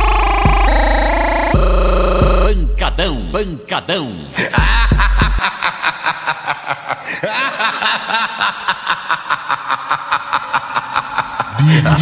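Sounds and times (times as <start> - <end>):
deep bass boom: 0.0 - 3.6, 4.6 - 5.4
chopped sample stuttering: 0.0 - 3.7.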